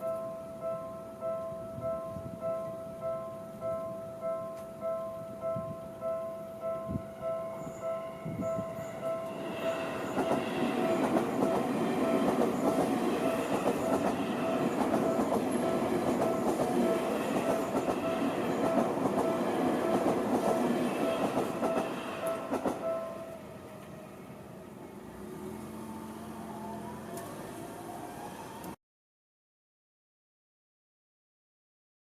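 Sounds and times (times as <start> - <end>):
level crossing warning bell: 0.0 - 23.7
train wheels clattering over rail joints: 9.6 - 23.0.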